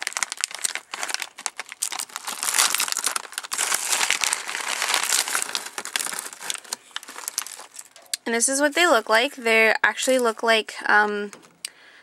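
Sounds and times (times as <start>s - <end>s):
plastic snack bag crinkling: 0.0s - 8.1s.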